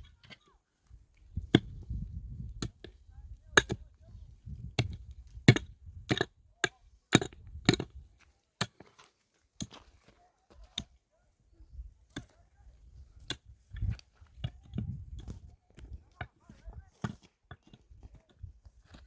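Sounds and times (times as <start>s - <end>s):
hand tool striking stone: 1.4s - 3.9s, 4.7s - 9.9s, 12.1s - 12.4s, 16.1s - 19.0s.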